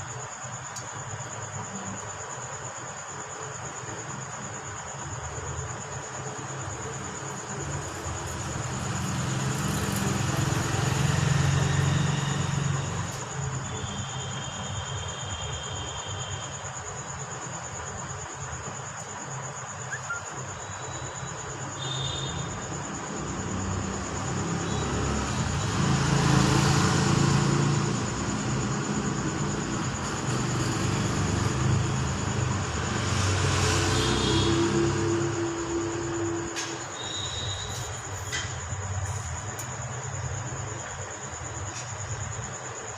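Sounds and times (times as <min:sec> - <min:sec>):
passing vehicle engine: 0:07.4 - 0:13.6, 0:22.6 - 0:36.9.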